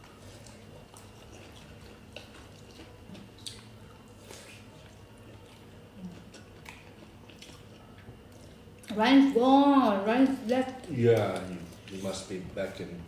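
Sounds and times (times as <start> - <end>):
wet chewing and sipping: 0.0 - 9.0.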